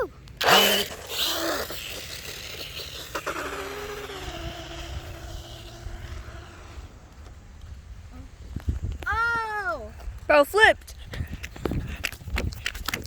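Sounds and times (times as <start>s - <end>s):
wheels scraping over ground: 0.2s - 9.1s
toy car motor whirring: 0.4s - 7.2s.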